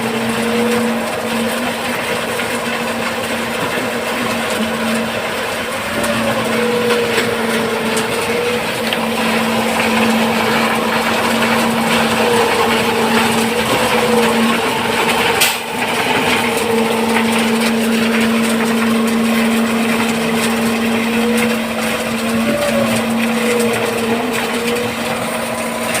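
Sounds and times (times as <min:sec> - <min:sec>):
machinery humming: 0:00.0 - 0:26.0
wavering high tone: 0:04.3 - 0:25.9.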